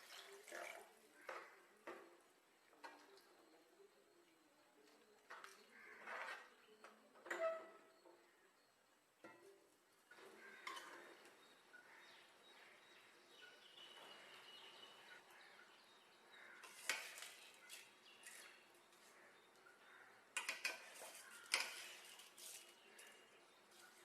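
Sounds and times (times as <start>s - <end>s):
metal utensil scraping a pot: 16.6s - 18.6s, 20.4s - 23.1s.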